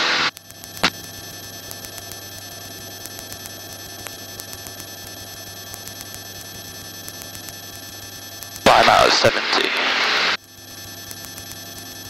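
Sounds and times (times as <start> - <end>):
electrical hum and whine: 0.0 - 12.0.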